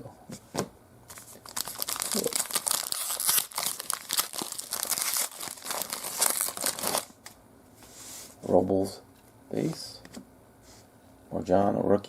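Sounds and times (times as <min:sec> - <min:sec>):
plastic wrapper crinkling and tearing: 0:01.1 - 0:07.2.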